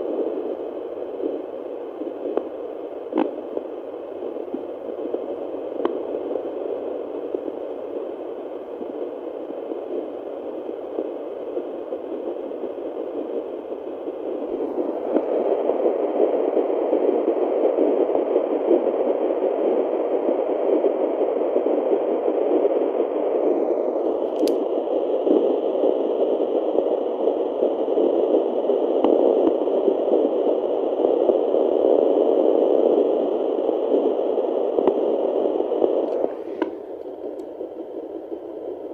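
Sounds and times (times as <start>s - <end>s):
doppler monitor hiss and crackle: 0.0s - 38.9s
click: 24.3s - 24.6s.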